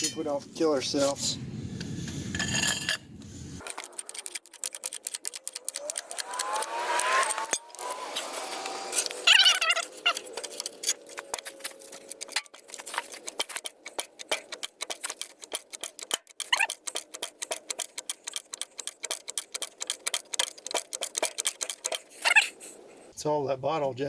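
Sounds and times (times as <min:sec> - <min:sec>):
bottle jack clicking and knocking: 0:03.6 - 0:08.0, 0:08.6 - 0:22.5
short high squeaks: 0:05.8 - 0:13.2, 0:16.4 - 0:16.8, 0:21.9 - 0:22.7.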